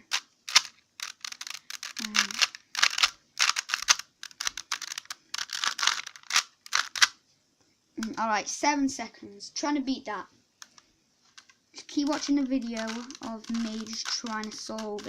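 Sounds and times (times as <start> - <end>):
puzzle cube plastic clicking: 0.0 - 7.2, 10.6 - 15.0.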